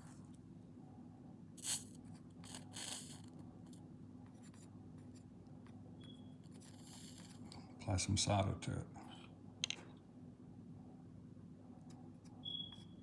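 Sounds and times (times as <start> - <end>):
steady low hum: 0.0 - 4.5
soldering iron scraping metal: 1.6 - 3.3, 6.4 - 7.4.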